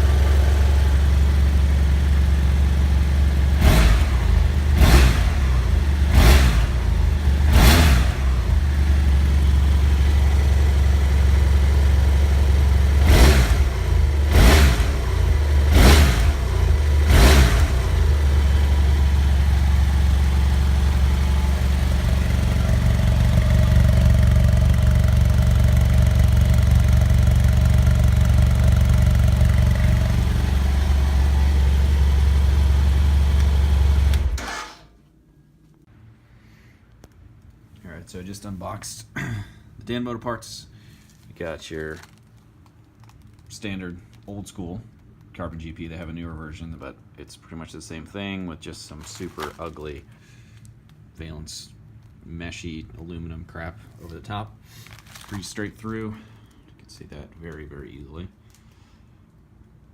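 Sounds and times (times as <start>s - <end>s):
motorcycle engine idling: 0.0s - 34.4s.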